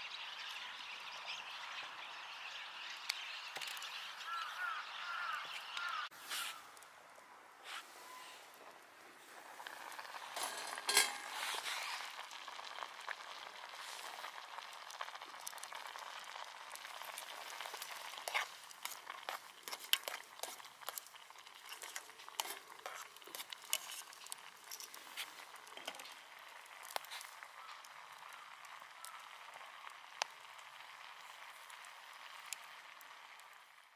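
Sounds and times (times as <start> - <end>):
food sizzling over campfire: 0.0 - 33.9
fire popping and crackling: 8.6 - 33.9.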